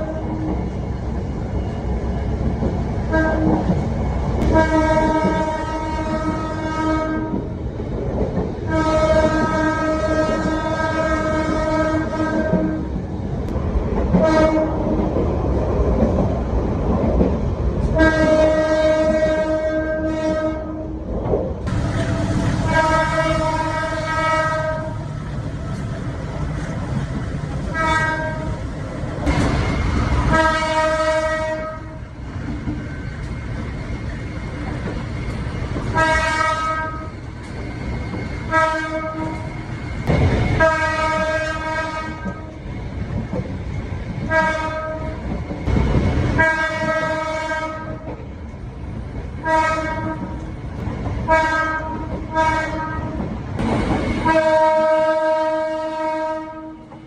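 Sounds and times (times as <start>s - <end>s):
wheels clattering on rails: 0.0s - 20.4s, 21.0s - 55.0s
train rumble: 0.0s - 57.0s
locomotive air horn blasts: 3.1s - 3.6s, 4.4s - 7.5s, 8.7s - 12.9s, 14.2s - 14.8s, 17.9s - 20.9s, 22.6s - 25.1s, 27.7s - 28.6s, 30.3s - 32.0s, 36.0s - 37.1s, 38.5s - 39.5s, 40.6s - 42.6s, 44.3s - 45.2s, 46.4s - 48.1s, 49.4s - 50.4s, 51.3s - 53.2s, 54.2s - 57.0s.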